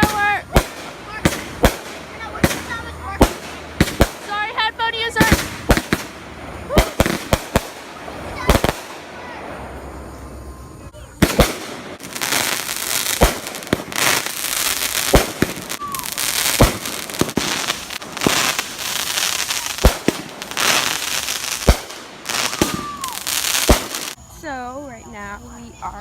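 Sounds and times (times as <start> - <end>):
fireworks bangs: 0.0 - 24.2
fireworks crackling: 0.0 - 24.5.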